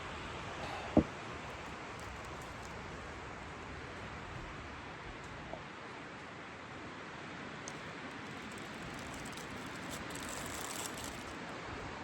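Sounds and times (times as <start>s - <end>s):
crackly rustling: 1.3s - 3.4s, 7.6s - 12.0s.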